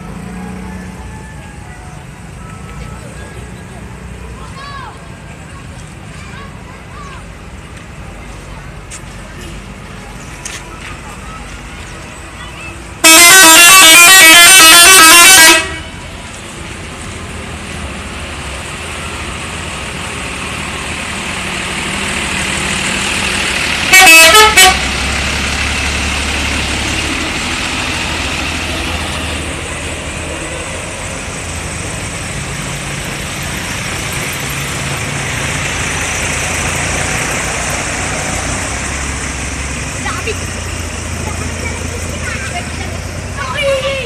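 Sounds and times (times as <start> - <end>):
bus engines and traffic: 0.0 - 44.0
musical bus horn: 13.0 - 16.1, 23.8 - 25.1.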